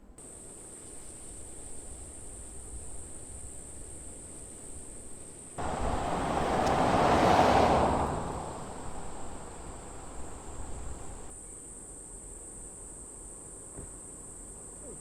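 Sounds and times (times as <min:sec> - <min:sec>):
vehicle passing close by: 0:05.6 - 0:11.3.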